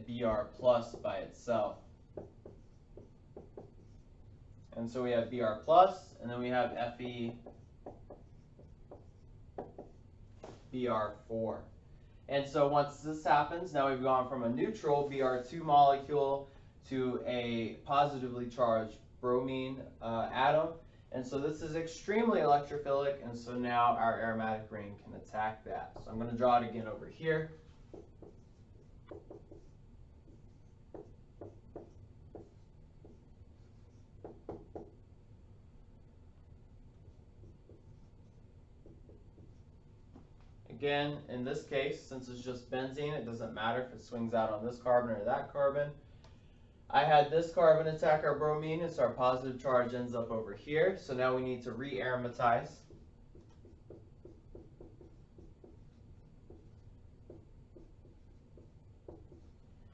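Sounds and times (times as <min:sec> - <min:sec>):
pen strokes on paper: 0:07.3 - 0:10.6, 0:27.6 - 0:34.8, 0:36.9 - 0:39.8, 0:52.8 - 0:59.8.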